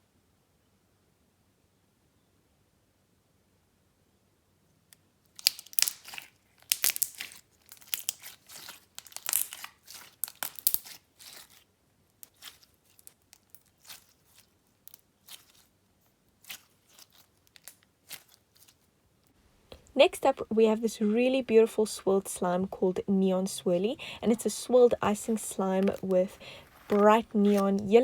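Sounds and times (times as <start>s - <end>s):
slime crackling and popping: 5.3s - 15.7s, 16.3s - 18.9s, 23.6s - 28.0s.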